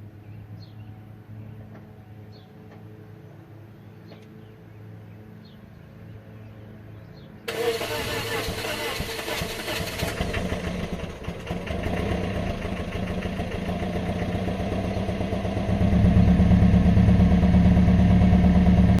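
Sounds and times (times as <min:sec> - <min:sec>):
engine cranking and running: 0:07.5 - 0:19.0.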